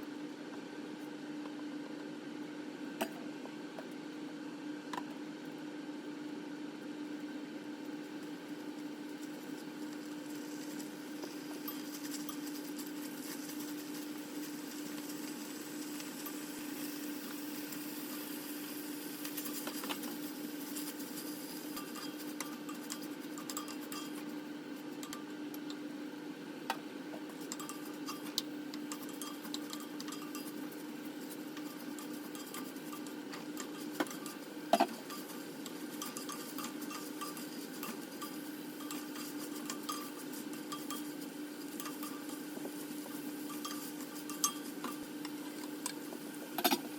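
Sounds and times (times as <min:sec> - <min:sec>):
steady low hum: 0:00.0 - 0:46.9
utensils scraping dishes and pan: 0:10.0 - 0:24.4, 0:27.2 - 0:46.9.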